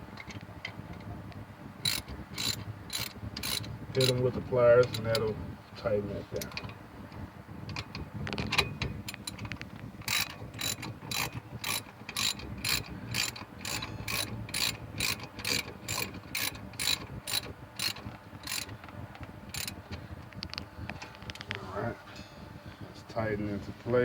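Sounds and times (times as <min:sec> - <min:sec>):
ratchet wrench clicking: 0:01.8 - 0:05.4, 0:07.7 - 0:18.8, 0:19.5 - 0:19.8.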